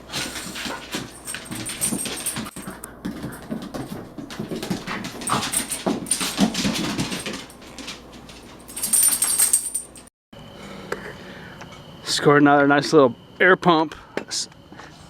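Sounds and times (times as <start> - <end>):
handling and rustling noise: 0.0 - 10.1.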